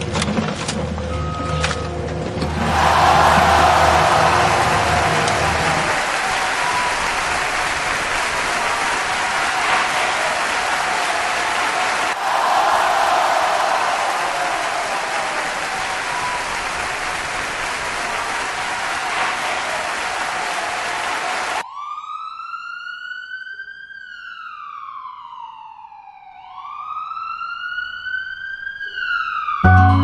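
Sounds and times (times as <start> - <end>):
police siren wailing: 1.0 - 9.4, 21.6 - 30.0.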